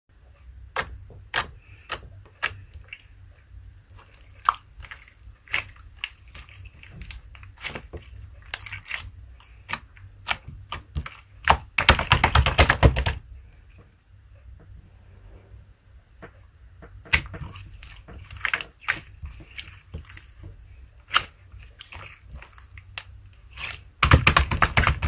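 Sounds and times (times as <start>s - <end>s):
slime popping and crackling: 21.1s - 25.0s.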